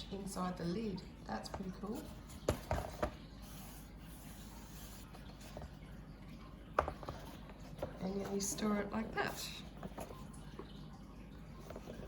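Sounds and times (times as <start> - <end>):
soft rubbing and rustling: 1.8 - 10.9, 11.5 - 12.0.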